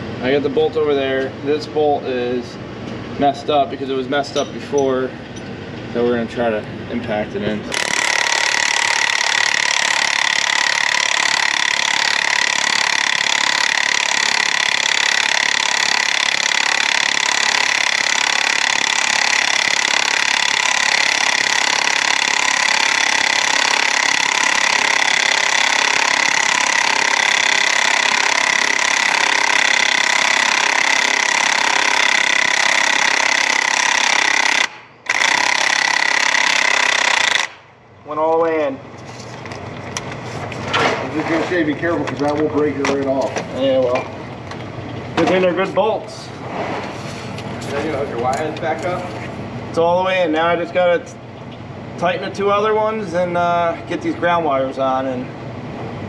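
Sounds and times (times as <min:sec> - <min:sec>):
impact wrench hammering: 0:07.7 - 0:37.7.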